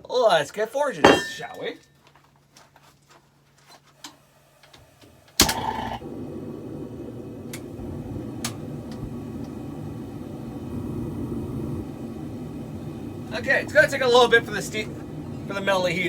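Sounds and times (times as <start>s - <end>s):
forge rushing noise: 5.2s - 16.0s
forge igniting whoosh: 5.4s - 16.0s.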